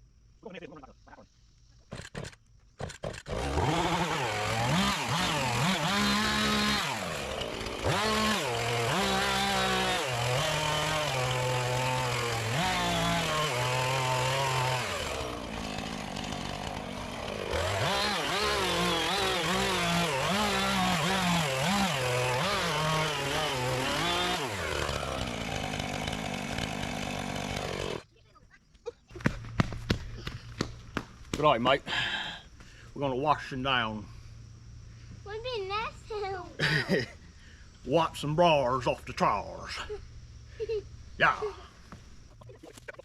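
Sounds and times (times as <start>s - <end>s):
chainsaw cutting brush: 1.8s - 28.1s, 36.1s - 37.1s.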